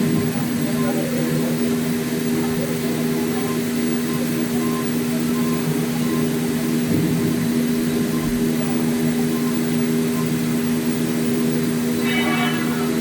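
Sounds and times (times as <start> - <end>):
machine humming: 11.2 - 13.0.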